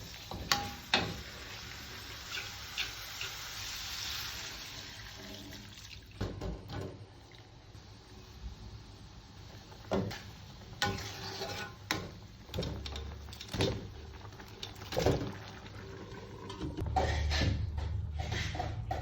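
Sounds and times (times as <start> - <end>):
cookware and utensils clattering: 0.0 - 1.6, 9.9 - 19.0.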